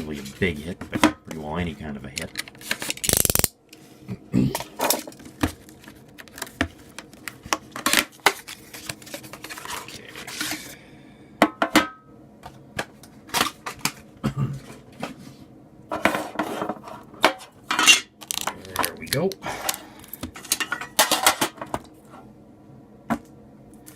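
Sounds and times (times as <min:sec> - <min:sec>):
packaging clicks crinkles and rustles: 0:05.0 - 0:10.7, 0:18.2 - 0:20.1.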